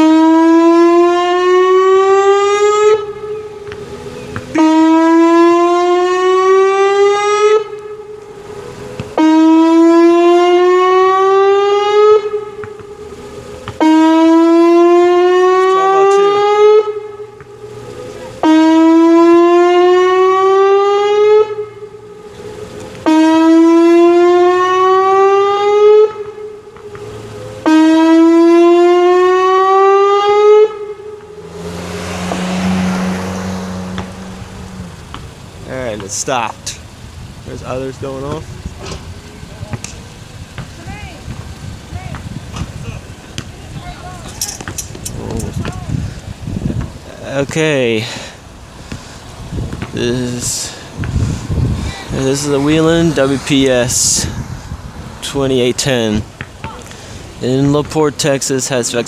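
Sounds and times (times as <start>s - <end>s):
rising warning siren tone: 0.0s - 35.7s, 51.4s - 55.5s.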